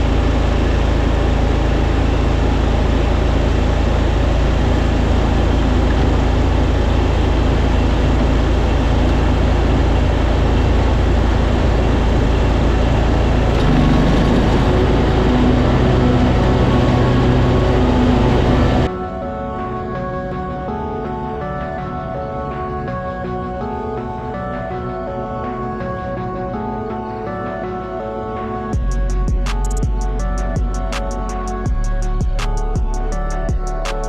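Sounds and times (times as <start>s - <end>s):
lawn tractor engine running: 4.6s - 18.9s.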